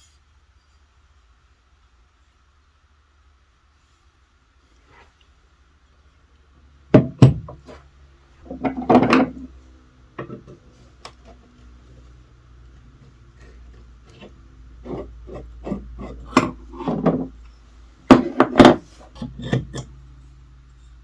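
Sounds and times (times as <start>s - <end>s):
hand plane parts knocking: 6.9s - 9.5s, 14.1s - 17.4s, 18.1s - 20.0s.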